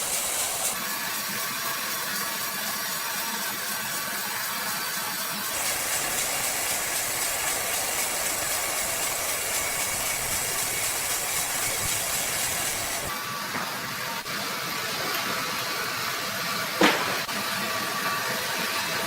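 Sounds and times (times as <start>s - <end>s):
sawmill saw whirring: 0.0s - 0.8s, 5.4s - 14.7s.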